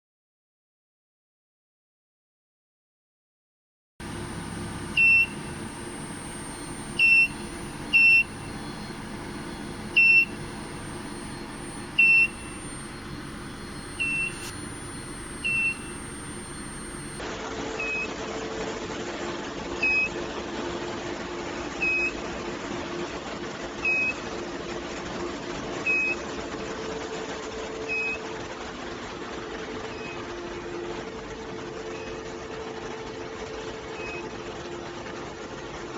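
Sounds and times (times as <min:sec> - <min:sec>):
low steady drone: 0:04.0 - 0:17.2
short high electronic beeps: 0:04.0 - 0:17.2
steady machinery hum: 0:04.0 - 0:17.4.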